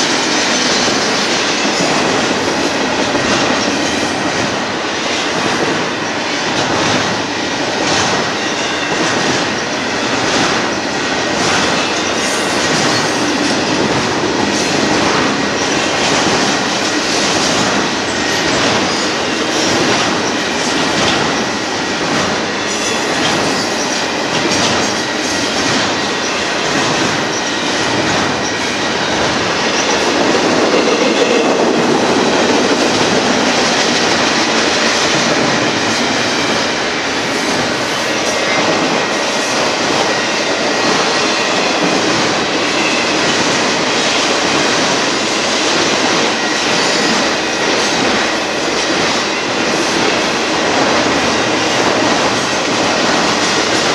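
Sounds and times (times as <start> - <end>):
clacks over rail joints: 0.0 - 36.7
train wheels rumbling on rail: 0.0 - 53.9.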